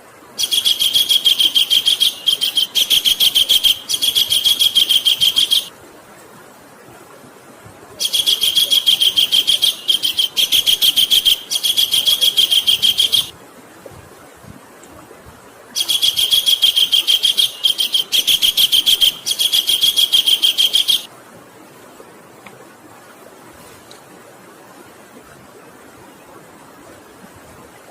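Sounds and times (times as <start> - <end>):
kingfisher rattling call: 0.4 - 5.7, 8.0 - 13.3, 15.8 - 21.1.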